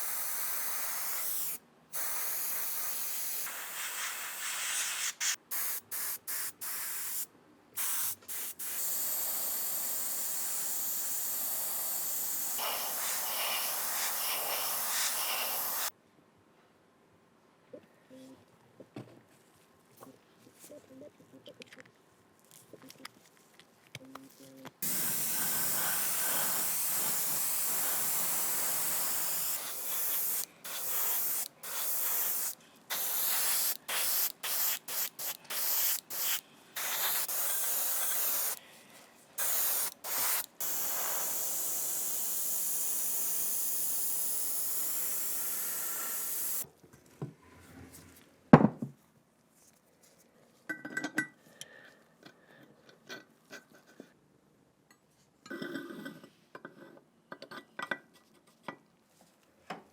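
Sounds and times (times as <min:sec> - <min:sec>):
spray paint hissing: 0:00.0 - 0:15.9, 0:24.8 - 0:38.6, 0:39.4 - 0:46.7.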